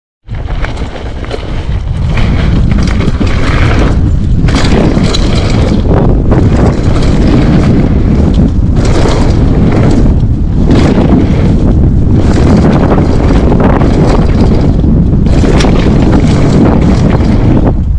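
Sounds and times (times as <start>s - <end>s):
tyre and trail noise: 0.2s - 17.9s
wind buffeting microphone: 0.2s - 17.9s.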